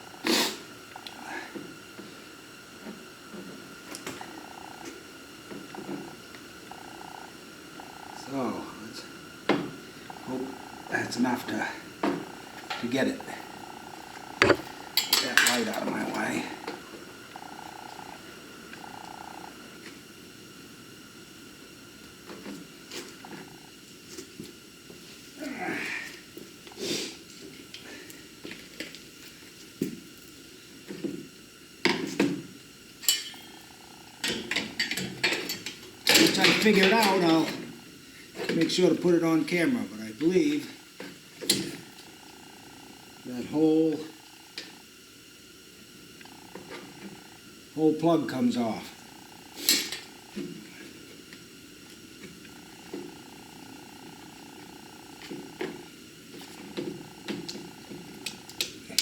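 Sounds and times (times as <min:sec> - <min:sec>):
faint steady hum: 0:00.0 - 0:59.0
plug knocks and clicks: 0:14.4 - 0:14.7.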